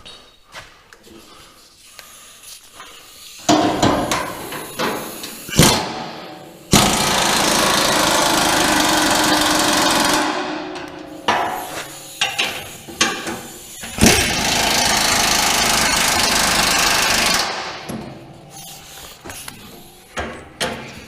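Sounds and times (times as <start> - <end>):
impact wrench hammering: 3.4 - 18.4.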